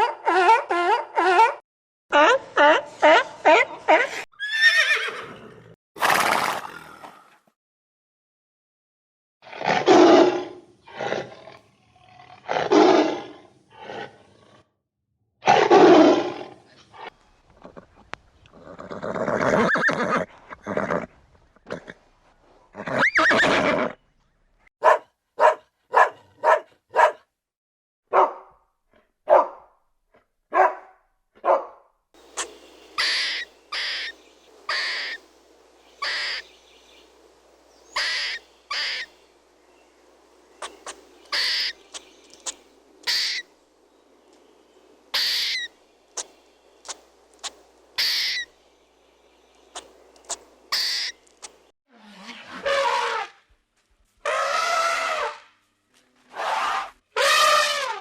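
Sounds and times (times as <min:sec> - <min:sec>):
loud animal calls: 0:32.2 - 0:35.3, 0:36.0 - 0:36.6, 0:37.9 - 0:39.2, 0:40.6 - 0:43.5, 0:45.1 - 0:48.6, 0:49.7 - 0:51.6, 0:56.4 - 0:58.0
short sharp animal calls: 0:40.6 - 0:43.4, 0:45.1 - 0:46.3, 0:46.9 - 0:48.5, 0:49.8 - 0:51.2.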